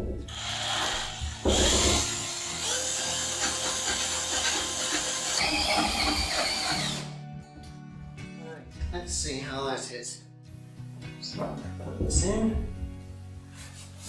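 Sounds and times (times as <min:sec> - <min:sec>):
power drill boring into wood: 0:00.3 - 0:07.2.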